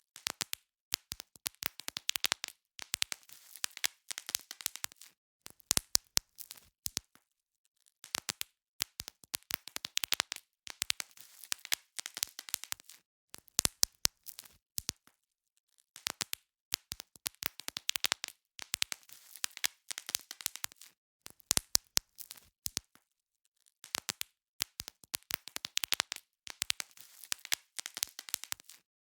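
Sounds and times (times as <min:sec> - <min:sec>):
bubble wrap popping: 0:00.2 - 0:05.2, 0:08.0 - 0:13.0, 0:16.0 - 0:23.0, 0:23.8 - 0:28.9.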